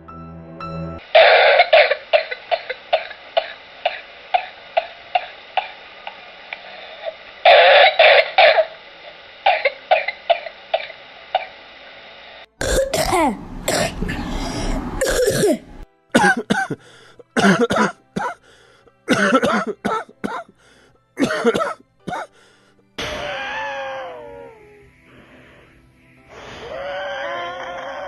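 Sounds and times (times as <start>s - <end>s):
person coughing: 1.2s - 4.5s, 12.6s - 16.8s, 17.4s - 18.4s, 19.1s - 20.5s, 21.2s - 22.3s.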